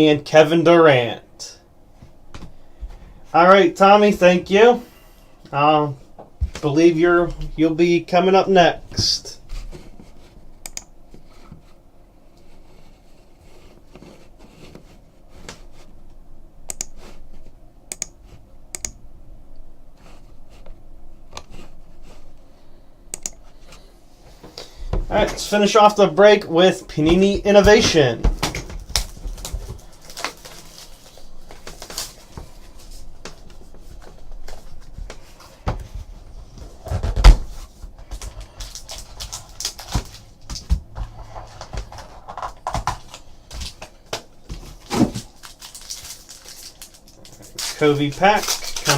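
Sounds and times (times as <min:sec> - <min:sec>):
handling noises on a desk: 0:26.8 - 0:48.9.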